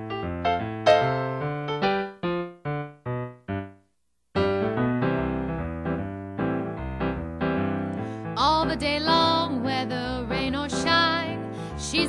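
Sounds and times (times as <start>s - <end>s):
piano chords and accompaniment: 0.0s - 12.0s.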